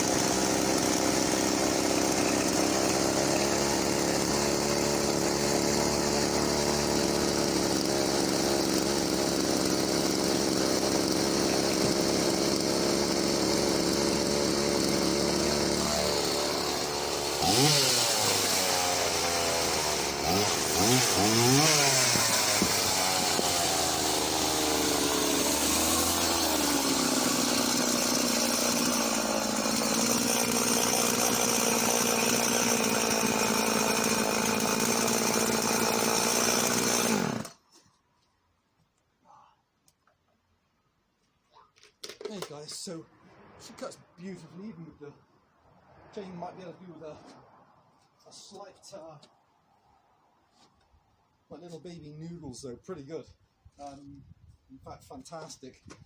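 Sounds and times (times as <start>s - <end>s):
chainsaw idling and revving: 0.0s - 37.6s.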